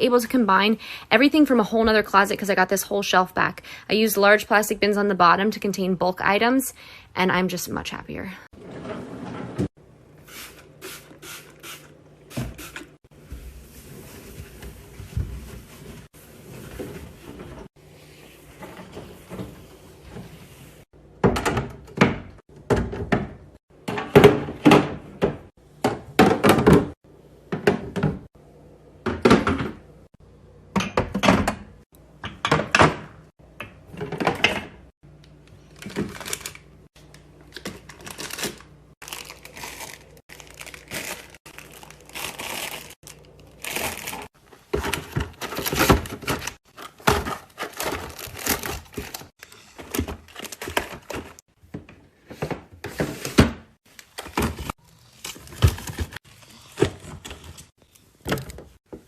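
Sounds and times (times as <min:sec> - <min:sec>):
items thunking into plastic containers: 0:21.1 - 0:28.3, 0:29.0 - 0:29.9, 0:30.7 - 0:34.9, 0:43.6 - 0:59.0
packaging crinkling: 0:37.6 - 0:44.3, 0:45.4 - 0:49.3.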